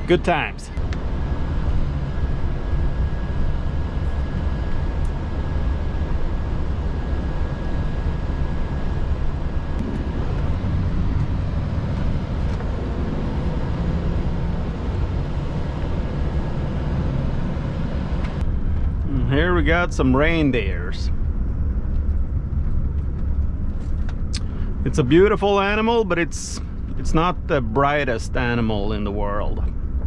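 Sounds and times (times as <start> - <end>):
truck engine low rumble: 0.0 - 30.0.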